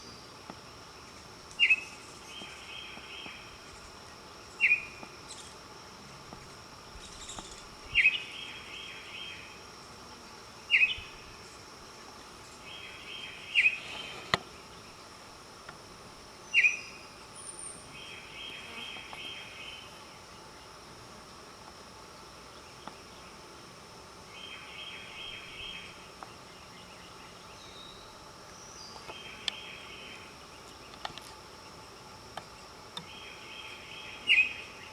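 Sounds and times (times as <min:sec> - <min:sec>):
bird calling with trills: 0:33.1 - 0:34.7.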